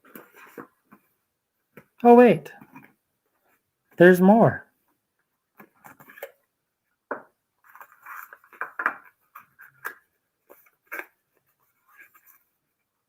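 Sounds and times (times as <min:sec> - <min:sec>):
packaging rustling and tapping: 0:07.1 - 0:11.5.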